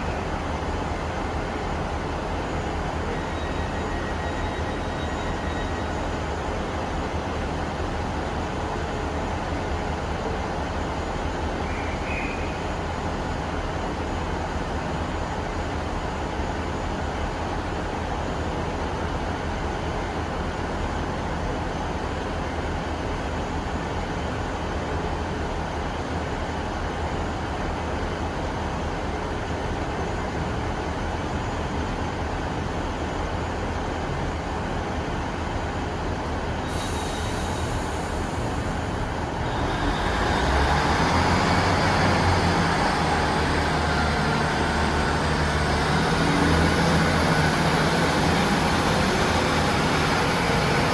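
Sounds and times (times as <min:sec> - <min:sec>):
train running: 0:00.0 - 0:50.9
high hiss: 0:36.7 - 0:40.6.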